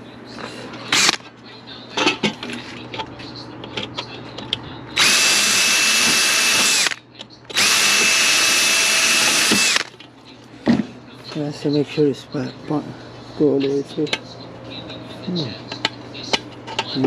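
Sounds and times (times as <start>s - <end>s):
electric drill boring sheet metal: 5.0s - 9.9s.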